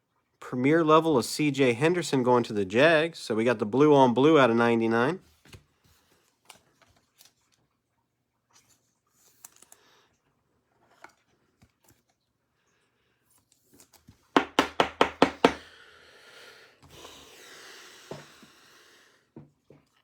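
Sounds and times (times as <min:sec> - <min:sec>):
cards rustling and sliding: 0:05.2 - 0:07.6, 0:08.5 - 0:09.8, 0:13.3 - 0:14.3
sharp knocks on tabletop: 0:14.4 - 0:15.6.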